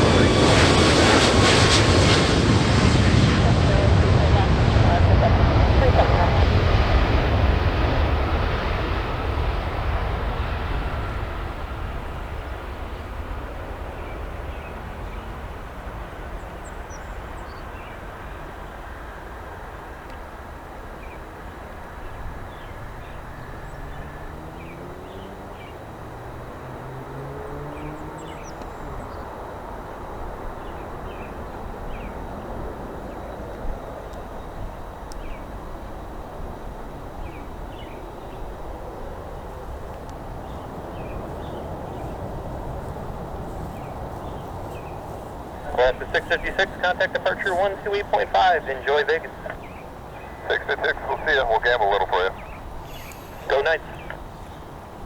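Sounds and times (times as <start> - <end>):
jet engines at takeoff rushing: 0.0 - 55.0
small birds chirping: 27.6 - 29.4, 40.0 - 55.0.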